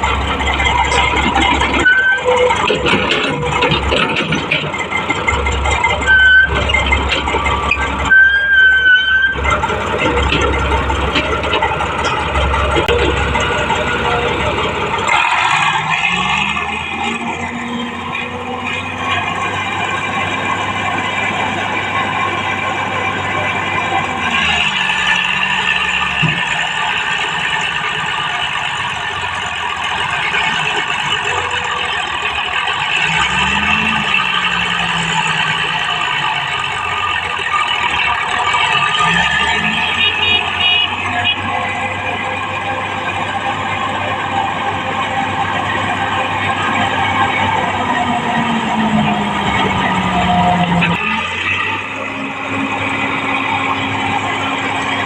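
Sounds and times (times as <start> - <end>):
high steady squeal: 0.0 - 4.0, 4.7 - 11.0
heavy machinery engine rumble: 0.0 - 55.0.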